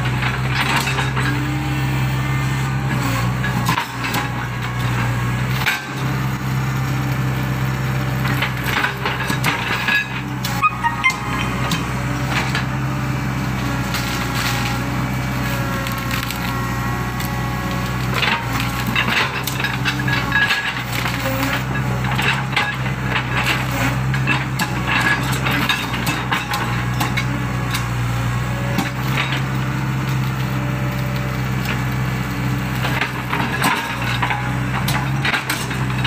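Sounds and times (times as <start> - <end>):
excavator diesel engine: 0.0 - 36.0
sharp cracks and crunches: 13.6 - 28.0.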